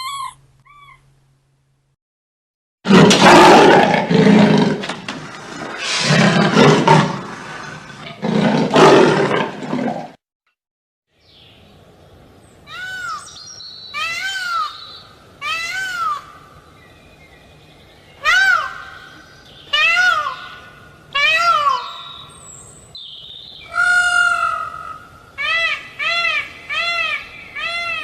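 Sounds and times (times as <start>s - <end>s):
rough roaring calls: 2.9s - 5.0s, 18.2s - 22.8s, 23.6s - 28.0s.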